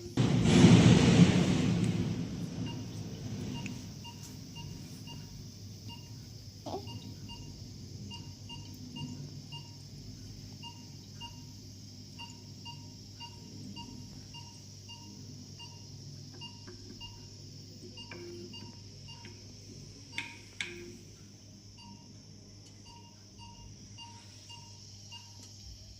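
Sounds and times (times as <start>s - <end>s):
low hum: 0.0s - 6.2s
patient monitor beeping: 2.6s - 19.4s, 20.0s - 21.0s, 21.7s - 22.2s, 22.8s - 25.4s.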